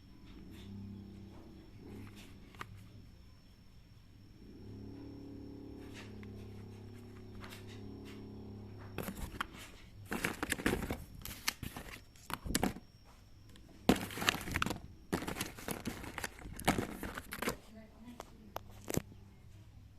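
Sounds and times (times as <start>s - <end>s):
steady low hum: 0.0s - 19.9s
plastic crinkling and crackling: 9.0s - 12.8s, 13.9s - 19.0s.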